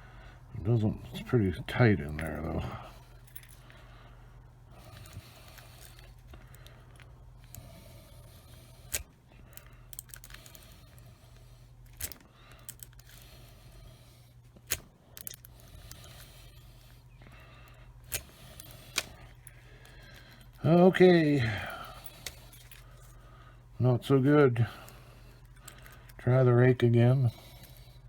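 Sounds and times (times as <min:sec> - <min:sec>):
faint low hum: 0:00.0 - 0:28.0
lock pick scraping in padlock: 0:04.8 - 0:20.6
sharp lock clicks: 0:14.6 - 0:16.4, 0:18.0 - 0:19.3.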